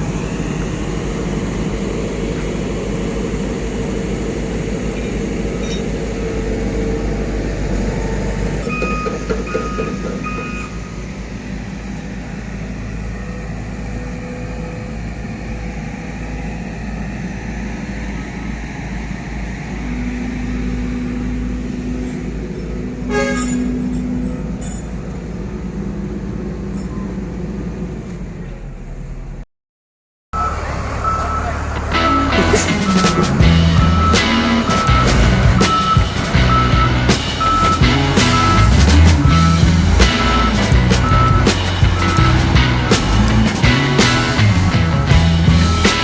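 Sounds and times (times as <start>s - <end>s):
diesel engine rumbling: 0.0s - 29.5s, 30.4s - 46.0s
sharp metallic clank: 5.6s - 6.2s.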